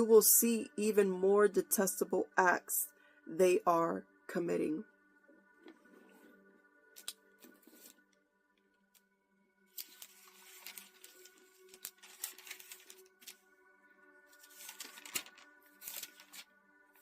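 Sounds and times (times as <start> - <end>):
soft background music: 0.0 - 17.0
pages rustling and turning: 6.9 - 8.0, 9.7 - 13.5, 14.3 - 16.6.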